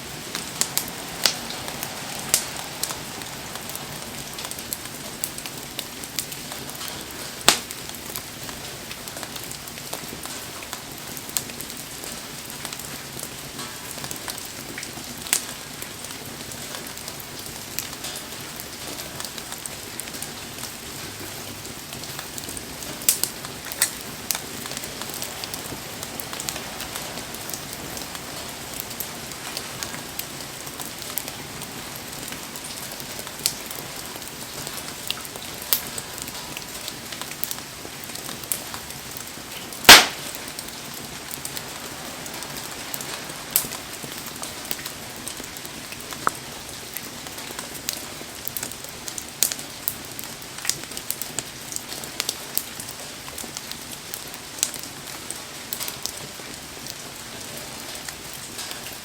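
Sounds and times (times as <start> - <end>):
campfire crackling and popping: 0.0 - 57.0
steady rain falling: 0.0 - 59.0.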